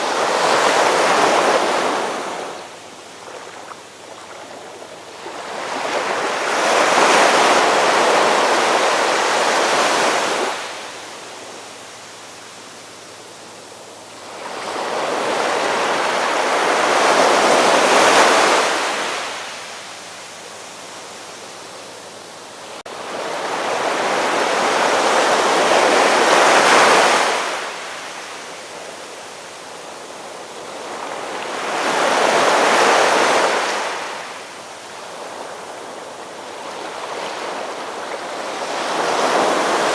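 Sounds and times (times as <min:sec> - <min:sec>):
ocean waves washing in: 0:00.0 - 0:39.9.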